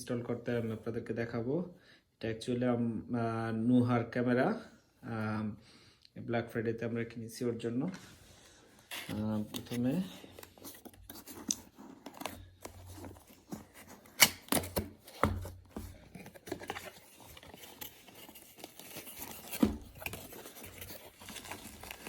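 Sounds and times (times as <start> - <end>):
packaging scraping and tearing: 8.8 - 22.0.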